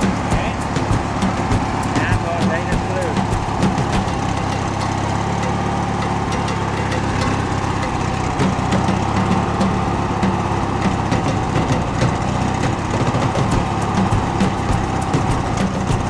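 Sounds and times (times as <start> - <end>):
lawn mower engine idling: 0.0 - 16.0.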